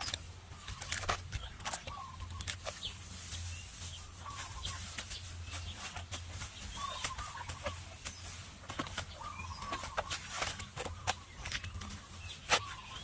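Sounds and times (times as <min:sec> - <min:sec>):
short bird calls: 0:06.7 - 0:07.9.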